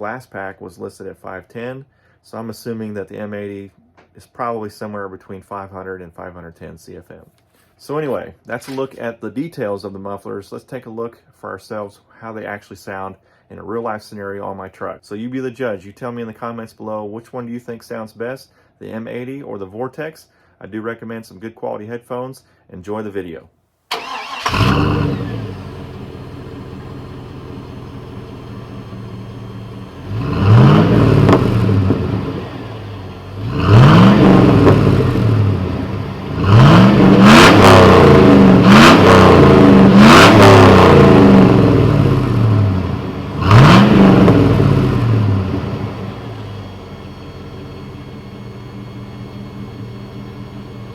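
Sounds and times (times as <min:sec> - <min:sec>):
car engine idling and revving: 0:24.0 - 0:50.9.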